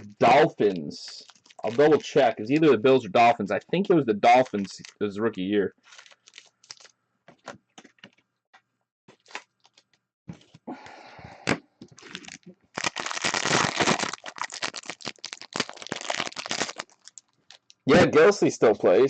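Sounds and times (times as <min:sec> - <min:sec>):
loud dense crackling: 0:12.8 - 0:17.0.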